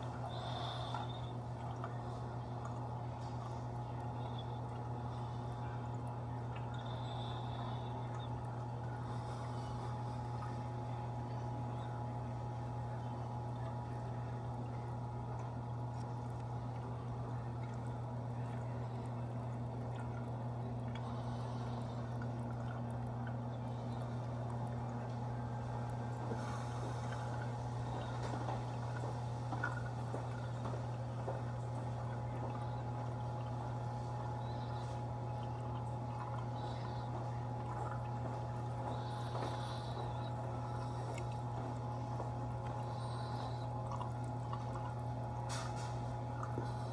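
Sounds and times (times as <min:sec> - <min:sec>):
aquarium water trickling and splashing: 0:00.0 - 0:46.9
steady low hum: 0:00.0 - 0:46.9.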